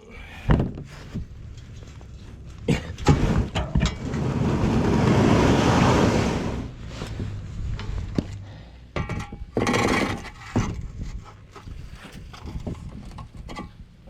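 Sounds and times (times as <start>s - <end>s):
kayak scraping across ice: 3.2s - 7.4s.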